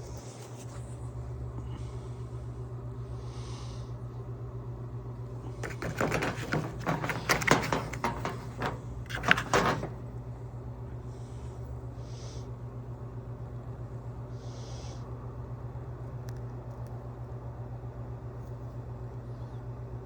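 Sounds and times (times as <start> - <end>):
clattering and knocking: 5.6 - 10.1.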